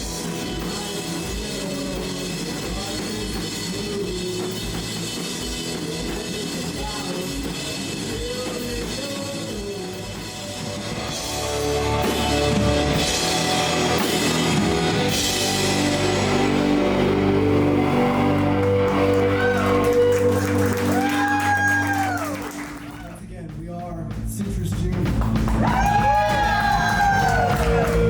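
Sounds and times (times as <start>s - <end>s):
rock band music: 0.0s - 28.0s
kick drum beat: 23.0s - 28.0s.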